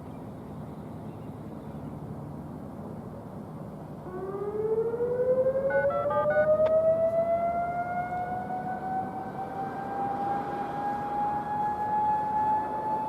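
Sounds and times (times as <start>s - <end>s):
warning siren rising tone: 4.0s - 13.0s.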